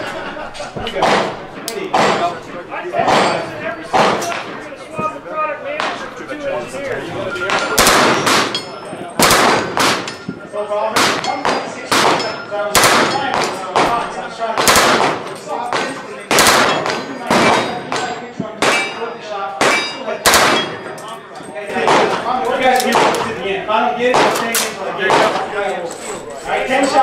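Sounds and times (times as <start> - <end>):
faint voices: 0.0 - 27.0
gunshots: 1.0 - 2.4, 3.0 - 4.6, 7.5 - 10.3, 10.9 - 19.0, 19.6 - 20.8, 21.8 - 23.3, 24.1 - 25.5
metallic ring of steel targets: 7.3 - 13.7, 18.7 - 21.1.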